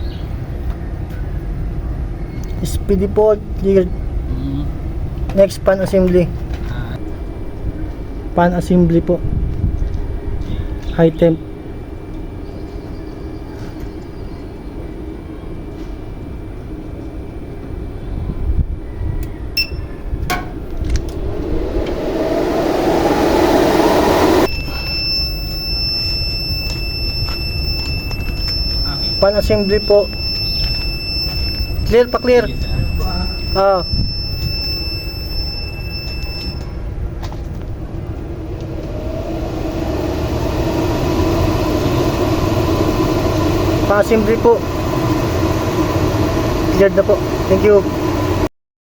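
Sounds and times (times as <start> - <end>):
equipment hum and rumble: 0.0 - 48.5
thin high whine: 19.6 - 37.0, 37.8 - 48.5.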